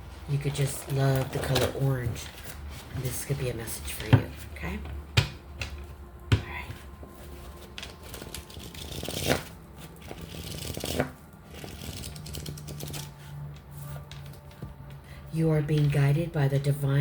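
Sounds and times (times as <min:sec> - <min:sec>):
cards being shuffled: 0:07.3 - 0:14.8.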